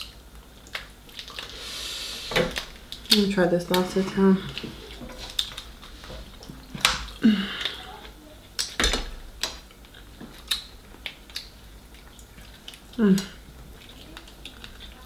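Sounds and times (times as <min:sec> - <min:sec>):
wet chewing and lip smacks: 0:00.0 - 0:01.6, 0:04.4 - 0:08.8, 0:09.4 - 0:15.0.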